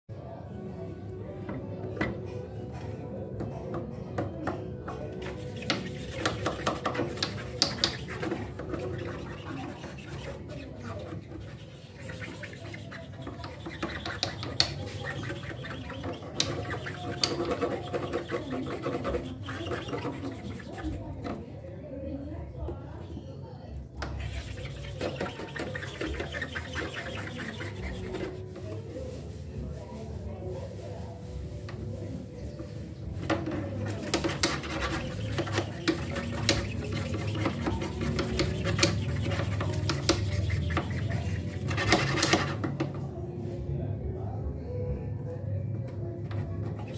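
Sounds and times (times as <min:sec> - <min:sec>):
scrubbing a birdcage: 0:04.8 - 0:21.5, 0:24.0 - 0:43.6, 0:46.2 - 0:46.9.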